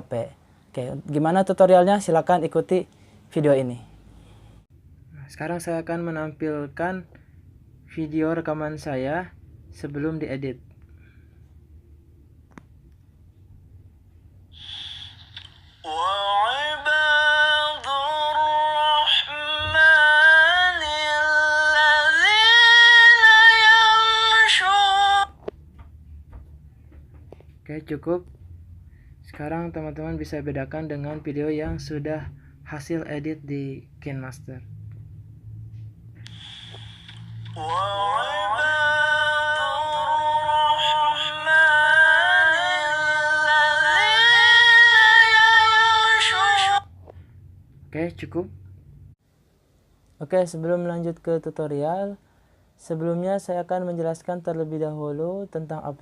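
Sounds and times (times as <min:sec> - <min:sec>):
person chanting recitation: 0:15.3 - 0:25.4, 0:36.3 - 0:46.9.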